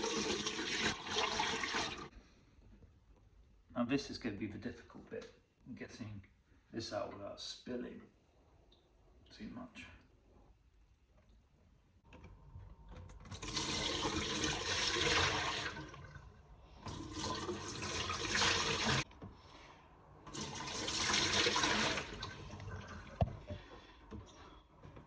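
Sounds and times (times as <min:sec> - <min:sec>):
water pouring from container: 0:00.0 - 0:02.1, 0:13.2 - 0:19.0, 0:20.3 - 0:23.4.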